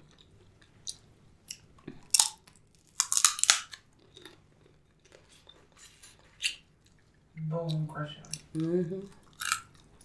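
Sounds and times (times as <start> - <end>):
crab shell crunching: 0.8 - 4.4, 9.2 - 10.0.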